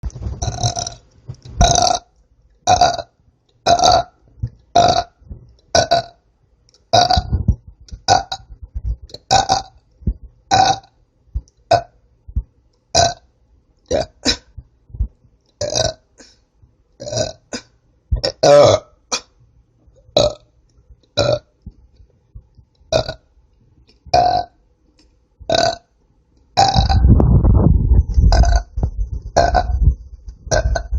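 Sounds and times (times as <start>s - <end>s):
woman burping: 13.9s - 14.6s, 17.0s - 19.3s, 26.6s - 27.1s.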